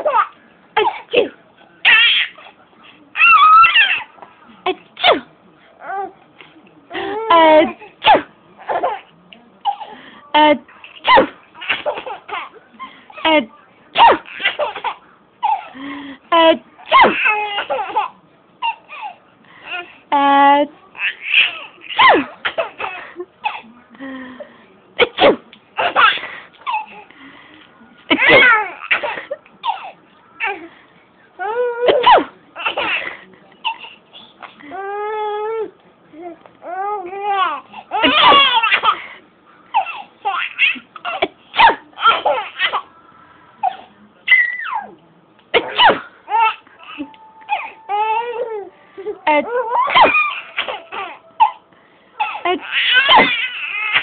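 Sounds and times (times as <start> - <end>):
baby laughing: 37.2 - 39.0, 49.4 - 51.6, 52.2 - 54.0.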